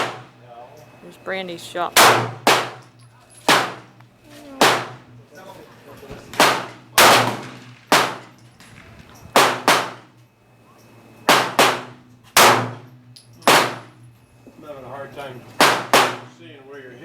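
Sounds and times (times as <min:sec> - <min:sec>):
gunshots with ringing tail: 0:00.0 - 0:00.4, 0:02.0 - 0:03.9, 0:04.6 - 0:05.1, 0:06.3 - 0:10.1, 0:11.3 - 0:14.0, 0:15.6 - 0:16.4.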